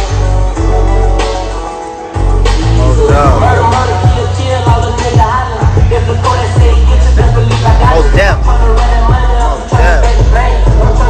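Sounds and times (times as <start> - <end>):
rapping over deep bass: 2.4 - 11.0.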